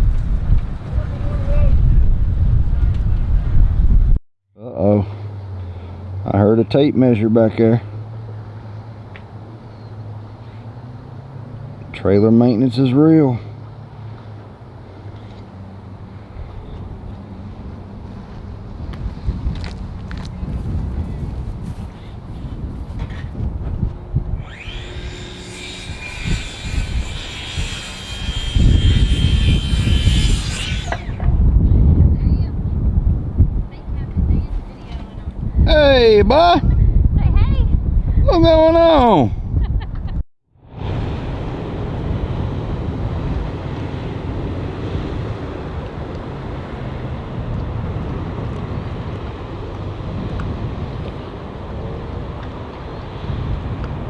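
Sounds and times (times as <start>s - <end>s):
wind rumble on microphone: 0.0s - 4.2s, 13.8s - 54.0s
low outdoor rumble: 15.9s - 36.2s.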